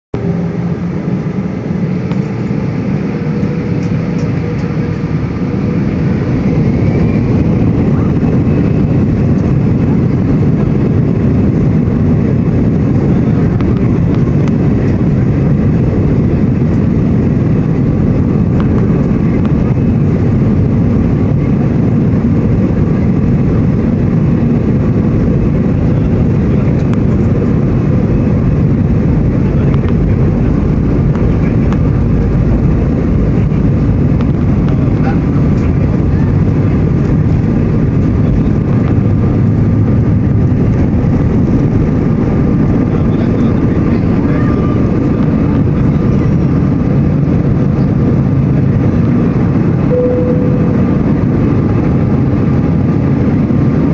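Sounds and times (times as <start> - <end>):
jet engines spooling up: 0.2 - 53.9
steady tone: 49.7 - 52.8.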